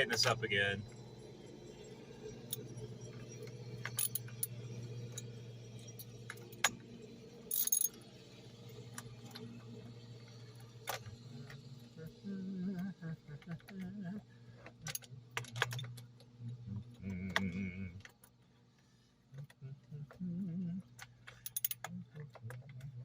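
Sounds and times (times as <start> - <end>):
steady low hum: 0.0 - 23.0
metal jingle: 3.8 - 6.8, 7.5 - 8.0, 21.3 - 22.0.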